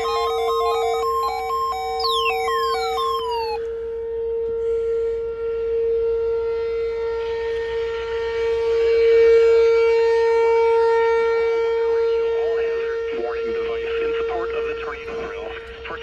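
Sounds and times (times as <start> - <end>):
warning siren steady tone: 0.0 - 4.3.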